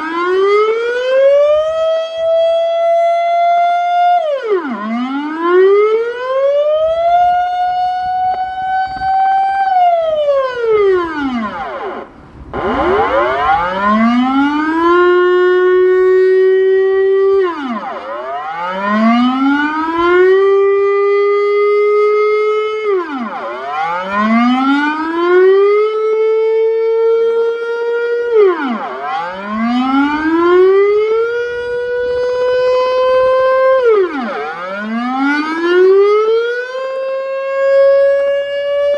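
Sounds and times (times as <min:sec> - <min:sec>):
air raid siren wailing: 0:00.3 - 0:28.8.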